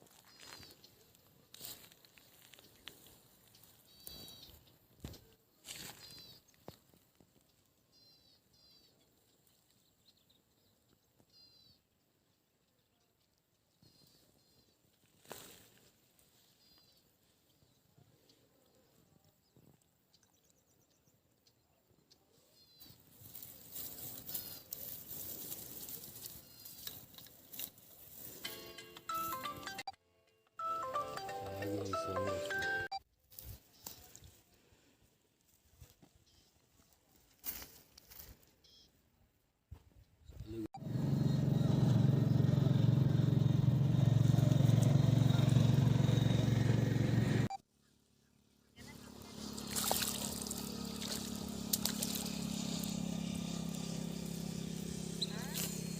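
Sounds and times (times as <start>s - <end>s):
bird chirping: 7.4s - 14.8s
engine running with low throb: 40.8s - 47.5s, 48.9s - 55.9s.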